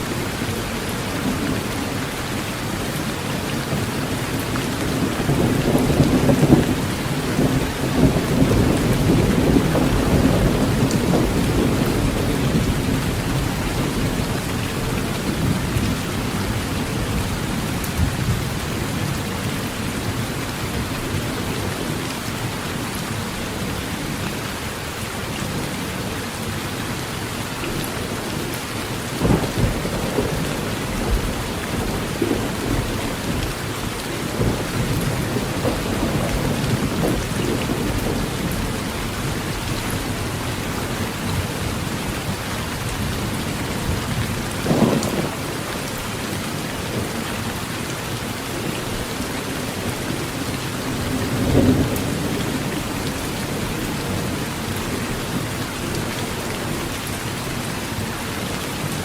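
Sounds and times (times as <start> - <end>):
heavy rain on a tin roof: 0.0 - 59.0
thunder rumbles: 2.9 - 22.0, 28.3 - 47.4, 48.6 - 57.0.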